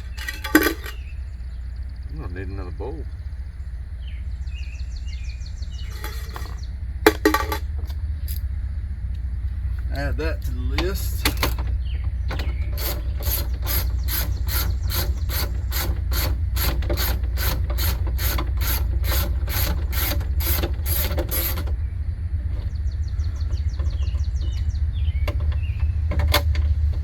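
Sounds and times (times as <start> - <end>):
steady low hum: 0.0 - 27.0
ratchet wrench clicking: 12.4 - 21.7.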